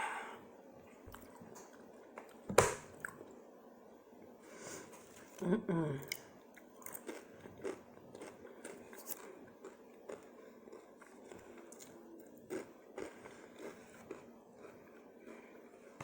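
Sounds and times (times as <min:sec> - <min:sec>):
person chewing food: 0:01.1 - 0:03.4, 0:06.1 - 0:16.0.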